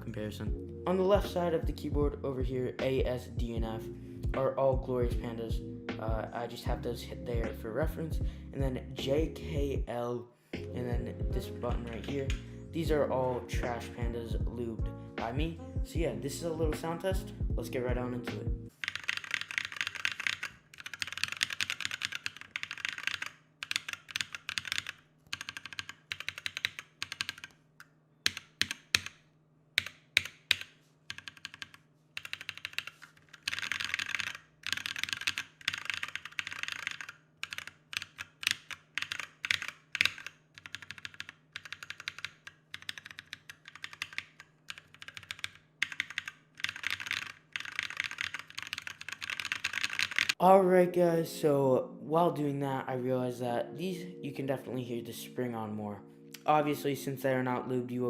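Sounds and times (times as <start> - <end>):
mechanical keyboard typing: 18.7 - 29.2, 29.8 - 50.4.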